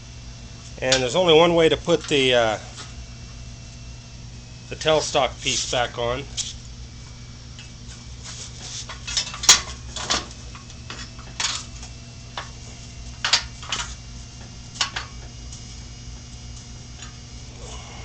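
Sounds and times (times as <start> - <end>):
metal lathe parts clinking: 8.9 - 12.6.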